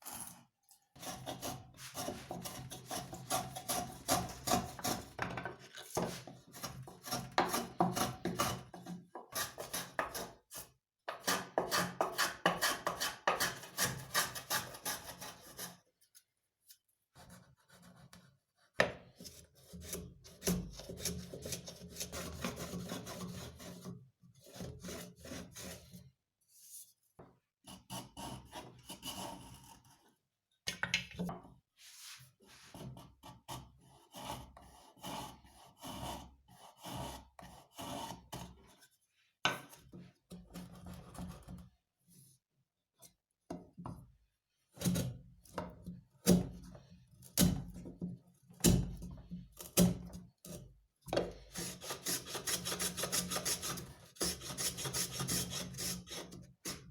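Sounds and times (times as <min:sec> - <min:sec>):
hand tool scraping wood: 0:01.0 - 0:15.8, 0:51.2 - 0:56.8.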